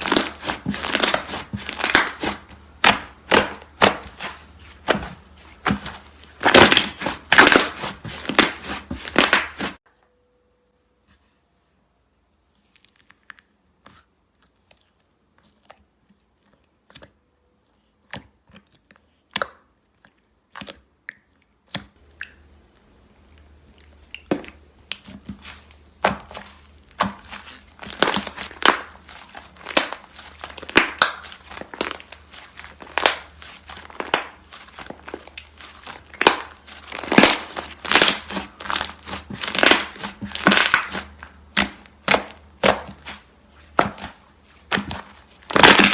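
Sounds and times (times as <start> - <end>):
slime crackling and popping: 0.0 - 9.8, 21.6 - 45.9.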